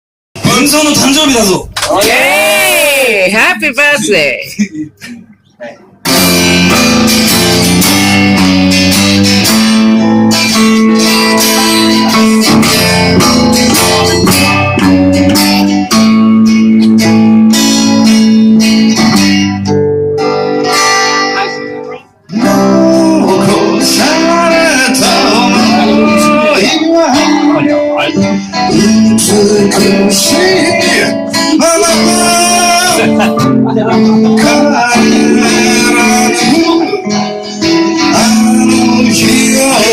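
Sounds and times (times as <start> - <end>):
band playing guitar-led song: 6.0 - 39.9
person singing: 20.4 - 39.9.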